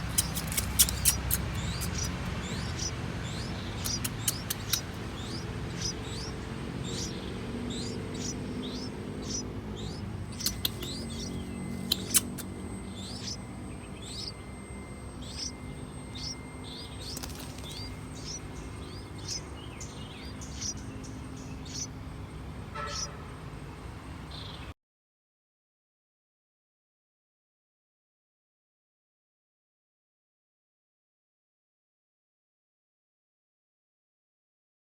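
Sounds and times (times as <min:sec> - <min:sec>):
sharp clicks: 0:00.0 - 0:02.1, 0:03.7 - 0:05.4, 0:10.3 - 0:12.5, 0:17.0 - 0:18.3
low background rumble: 0:00.0 - 0:24.6
small bird chirping: 0:00.0 - 0:24.7.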